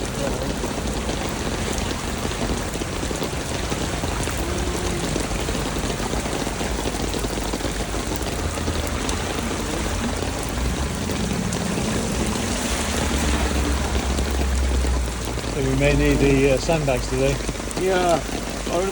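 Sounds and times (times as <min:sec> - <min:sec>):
floodwater running along road: 0:00.0 - 0:18.9
heavy rain falling: 0:00.0 - 0:18.9
low rumble: 0:07.8 - 0:15.8.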